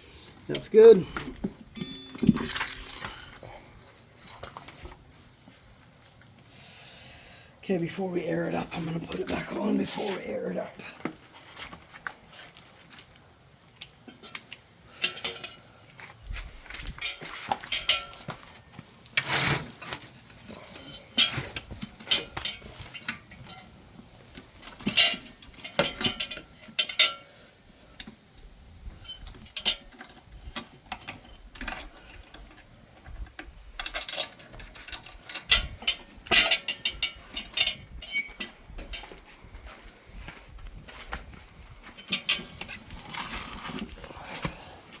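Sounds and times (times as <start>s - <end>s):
metallic clinks of tools and bike parts: 0.5s - 3.6s, 13.8s - 15.8s, 16.7s - 18.4s, 19.2s - 23.7s, 24.6s - 27.4s, 29.0s - 39.8s, 41.8s - 44.0s.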